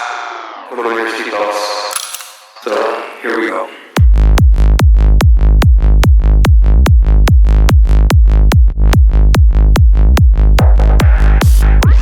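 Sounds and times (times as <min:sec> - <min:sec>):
bass line: 0:04.0 - 0:12.0
kick drum: 0:04.0 - 0:12.0.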